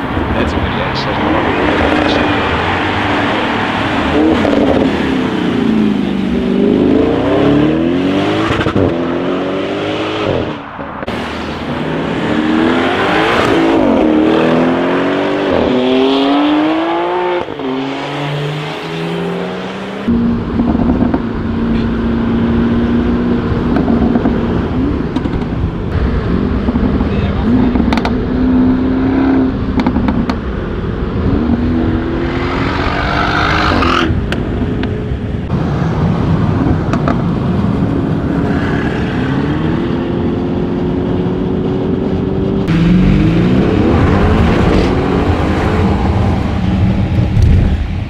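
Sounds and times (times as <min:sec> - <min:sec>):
car engine revving: 0:00.0 - 0:48.0
exhaust cracks: 0:42.6 - 0:48.0.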